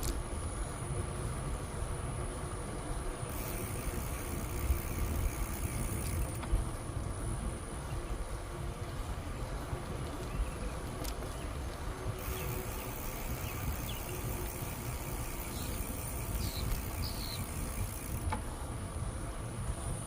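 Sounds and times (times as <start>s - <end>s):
high insect drone: 0.0s - 8.7s, 12.1s - 20.0s
wind and bicycle tyres rumble: 0.0s - 20.0s
bird chirps: 12.2s - 17.6s.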